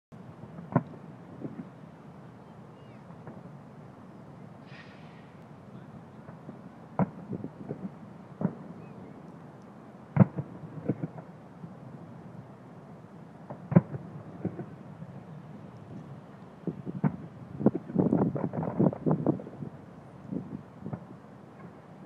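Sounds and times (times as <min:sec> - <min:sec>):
low background noise: 0:00.1 - 0:22.0
fireworks booming: 0:00.5 - 0:01.8, 0:03.0 - 0:03.6, 0:04.6 - 0:09.2, 0:10.1 - 0:11.4, 0:13.4 - 0:15.0, 0:16.6 - 0:21.9
small firework pops: 0:00.6 - 0:01.6, 0:06.2 - 0:08.6, 0:09.2 - 0:11.3, 0:13.5 - 0:14.8, 0:16.9 - 0:19.1, 0:20.8 - 0:21.8.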